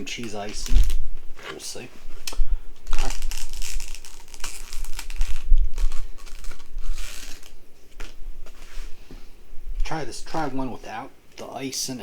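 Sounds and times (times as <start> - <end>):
food packaging crinkling and tearing: 0.1 - 1.0, 2.8 - 8.2.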